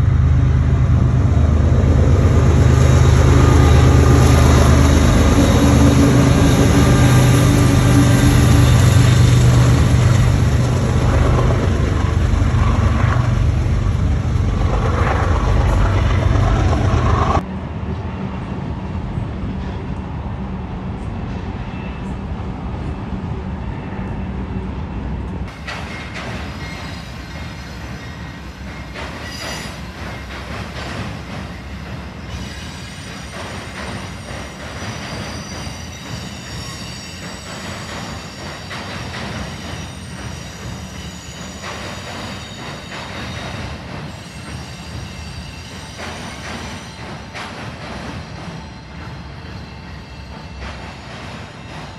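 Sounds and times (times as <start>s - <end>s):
train rumbling on rails: 0.0s - 51.9s
high-pitched wheel squeal: 26.4s - 30.0s, 32.2s - 47.3s.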